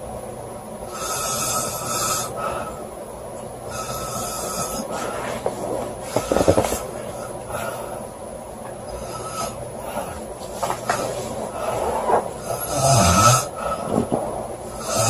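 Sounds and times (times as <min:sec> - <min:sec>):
woman snoring: 0:00.9 - 0:02.8, 0:03.7 - 0:05.4, 0:08.9 - 0:10.2, 0:10.9 - 0:14.1, 0:14.7 - 0:15.0.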